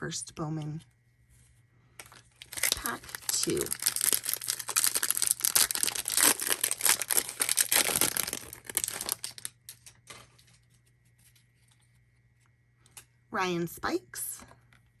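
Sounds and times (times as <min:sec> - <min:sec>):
wrapper tearing and crinkling: 0:02.0 - 0:10.0.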